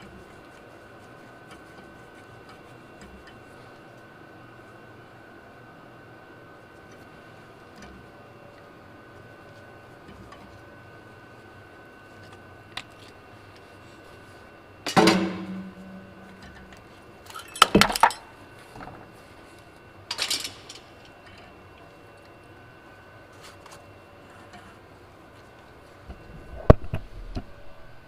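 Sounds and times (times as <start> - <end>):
metal tools clanking: 14.9 - 18.3, 20.1 - 21.0.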